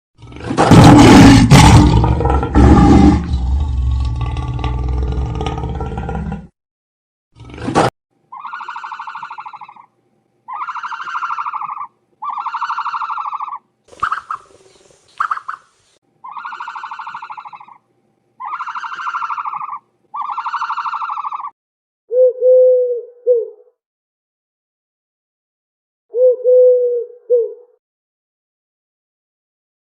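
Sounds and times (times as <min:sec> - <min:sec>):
buzzy wavering animal call: 0:08.3 - 0:09.9, 0:10.5 - 0:15.6, 0:16.2 - 0:17.8, 0:18.4 - 0:23.7.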